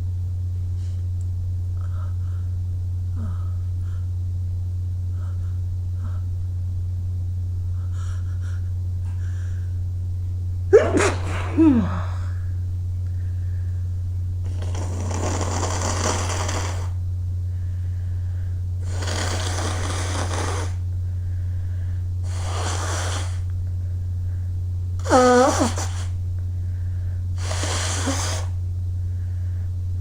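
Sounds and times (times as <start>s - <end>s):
steady low hum: 0.0s - 30.0s
man blowing his nose: 10.7s - 12.4s, 14.4s - 17.0s, 18.8s - 20.8s, 22.2s - 23.5s, 25.0s - 26.2s, 27.4s - 28.6s
person sneezing with a cry: 10.7s - 12.4s, 25.0s - 26.1s.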